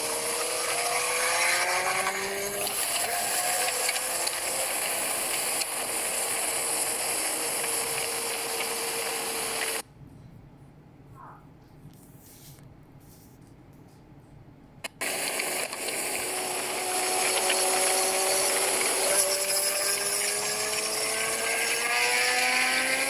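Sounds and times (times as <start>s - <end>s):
rising tones: 0.0s - 9.8s, 15.0s - 23.0s.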